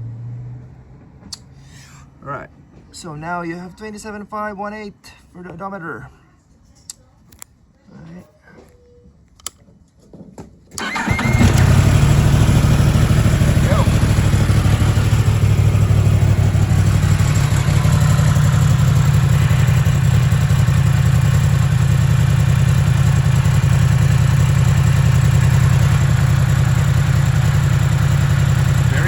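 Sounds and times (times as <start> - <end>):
motorcycle engine idling: 10.8 - 29.0.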